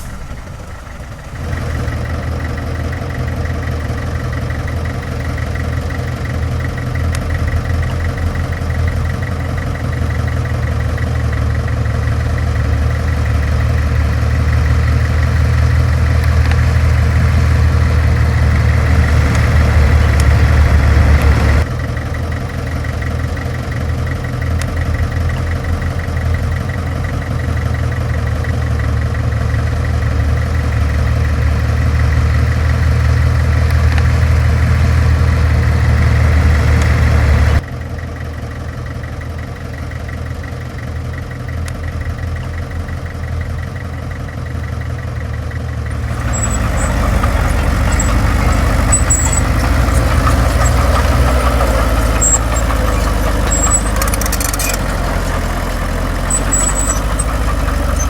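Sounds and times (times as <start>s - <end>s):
heavy machinery diesel engine: 0.0s - 58.0s
faint high metallic clicks: 46.2s - 55.6s.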